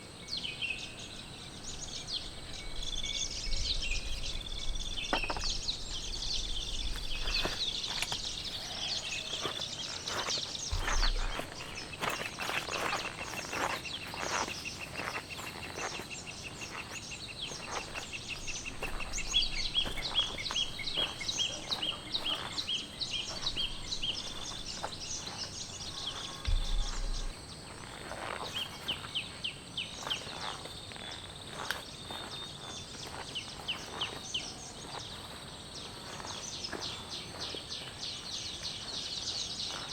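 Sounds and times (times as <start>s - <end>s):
bird chirps: 0.2s - 39.9s
bird trill: 1.8s - 29.4s.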